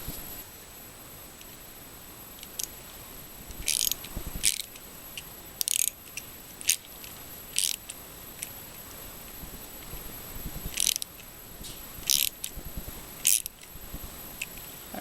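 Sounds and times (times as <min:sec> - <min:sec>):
ratchet driving screw into metal: 0:03.6 - 0:04.7, 0:05.6 - 0:05.9, 0:07.6 - 0:07.9, 0:10.7 - 0:11.1, 0:12.1 - 0:12.5, 0:13.2 - 0:13.6.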